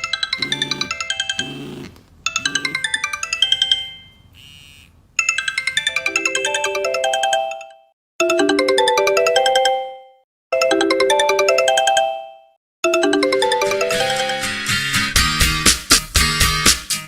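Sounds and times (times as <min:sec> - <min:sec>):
mobile phone ringtones: 0:04.4 - 0:04.9.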